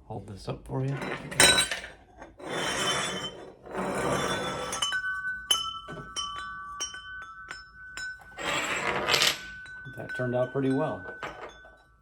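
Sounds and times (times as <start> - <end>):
wind chimes ringing: 4.1 - 12.0
wind chime handled rustling: 4.6 - 12.0.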